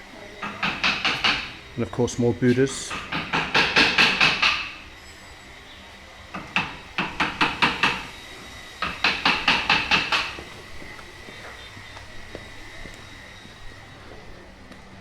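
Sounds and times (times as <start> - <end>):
hammer striking chisel: 0.4 - 1.6, 2.5 - 4.8, 6.3 - 8.2, 8.8 - 10.6.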